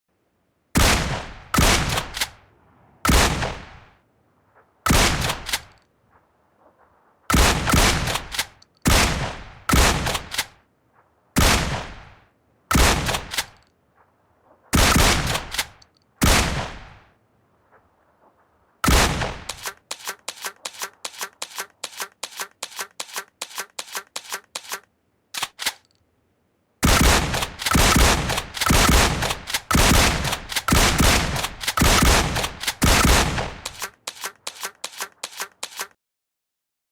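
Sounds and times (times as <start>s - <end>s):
shotgun blasts: 0.8s - 2.4s, 3.0s - 3.9s, 4.9s - 5.8s, 7.3s - 10.6s, 11.4s - 13.6s, 14.8s - 17.1s, 18.8s - 24.8s, 26.8s - 35.9s.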